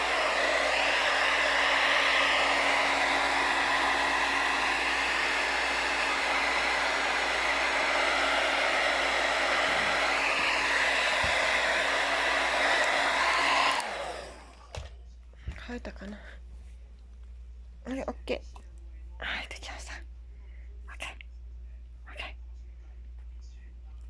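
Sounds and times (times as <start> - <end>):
hair dryer running: 0.0 - 14.9.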